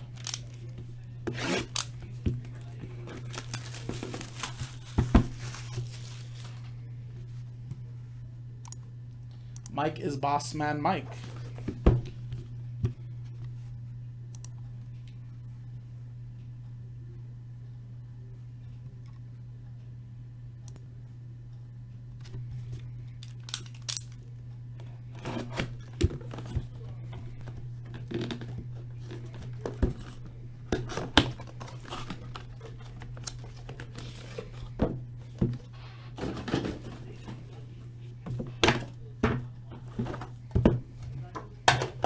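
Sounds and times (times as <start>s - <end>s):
packaging tearing and crinkling: 0.0s - 0.6s, 1.3s - 2.0s, 3.0s - 6.7s, 23.2s - 24.2s, 28.1s - 34.7s.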